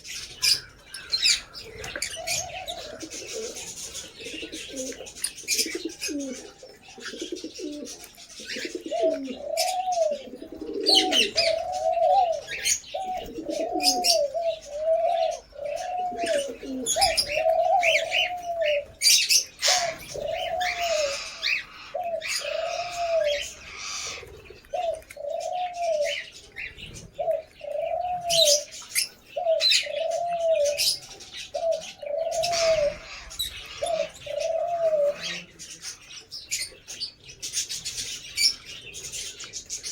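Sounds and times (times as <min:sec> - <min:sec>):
birds chirping and screeching: 0:00.0 - 0:39.9
low rising and falling bird call: 0:08.6 - 0:26.3.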